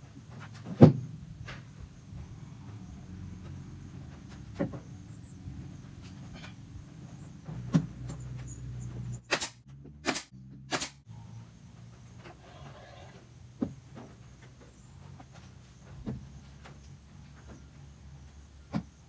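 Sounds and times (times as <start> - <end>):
loud sharp strikes on wood: 9.3 - 11.0.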